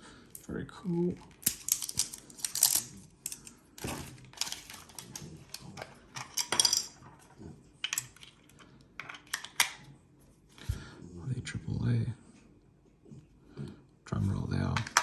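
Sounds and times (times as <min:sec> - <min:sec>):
plastic parts clattering: 0:01.2 - 0:09.8
plastic parts clicking and rustling: 0:01.2 - 0:09.8.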